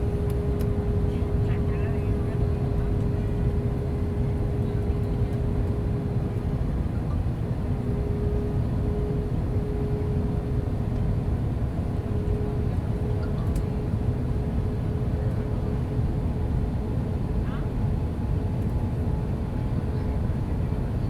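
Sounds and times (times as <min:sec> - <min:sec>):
airplane cabin rumble: 0:00.0 - 0:21.0.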